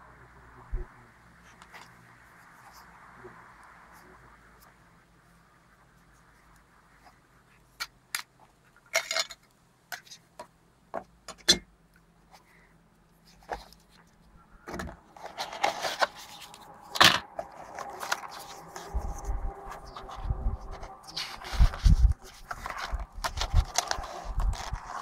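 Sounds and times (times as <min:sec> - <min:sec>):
packaging rustling and scraping: 0:13.2 - 0:25.0.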